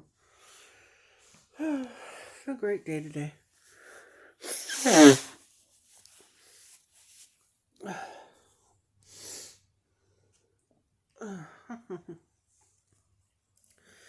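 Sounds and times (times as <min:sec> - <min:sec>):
person breathing: 0:03.7 - 0:05.3.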